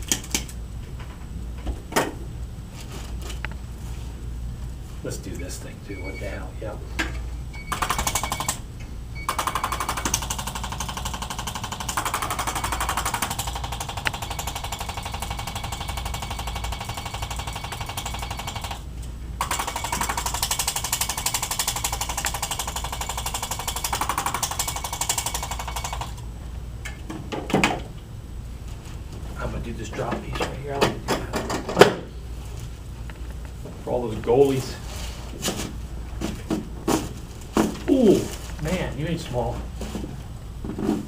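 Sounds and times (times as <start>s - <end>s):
electric massager hammering: 7.7s - 8.6s, 9.2s - 18.8s, 19.4s - 26.2s.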